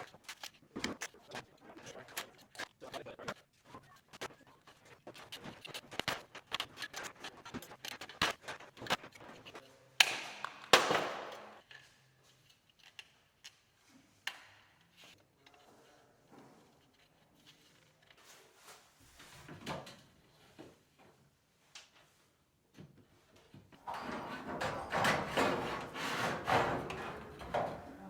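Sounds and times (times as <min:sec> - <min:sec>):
metal panels clicking and rattling: 0:23.8 - 0:28.0.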